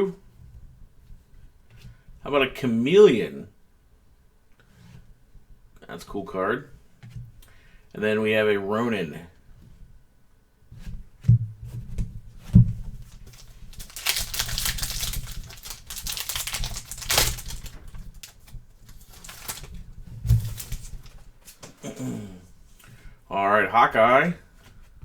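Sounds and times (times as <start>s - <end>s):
low steady hum: 11.0s - 23.4s
cards sliding and rustling: 13.0s - 21.8s.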